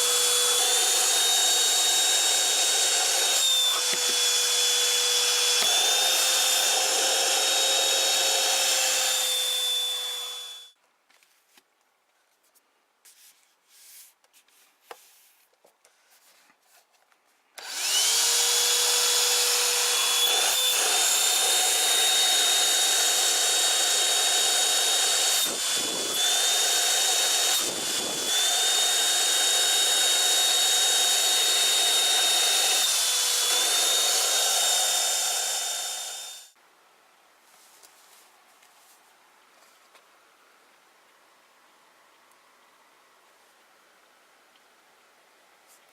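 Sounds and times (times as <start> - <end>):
handheld vacuum cleaner whine: 0.0 - 10.8, 17.6 - 36.6.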